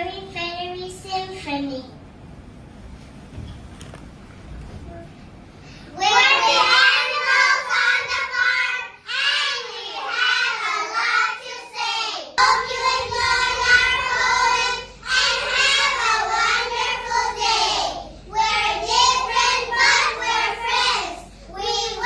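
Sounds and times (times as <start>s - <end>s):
young children singing: 5.9s - 22.0s.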